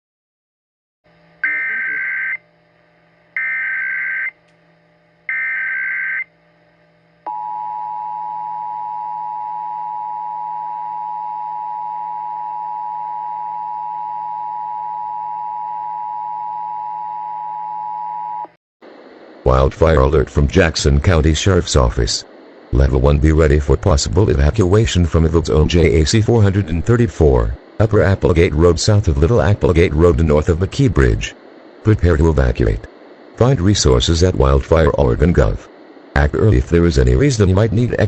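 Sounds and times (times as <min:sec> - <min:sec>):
faint hum: 0:01.1 - 0:38.0
two-tone attention signal: 0:01.4 - 0:02.4.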